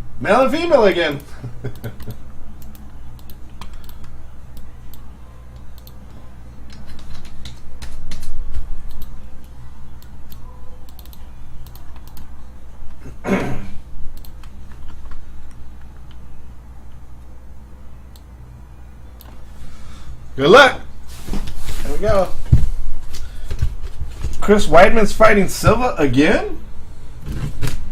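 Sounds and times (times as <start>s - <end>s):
low steady hum: 0.0s - 27.9s
mouse clicking: 1.1s - 12.3s, 14.1s - 16.2s
keyboard typing: 1.1s - 13.0s, 14.1s - 16.3s.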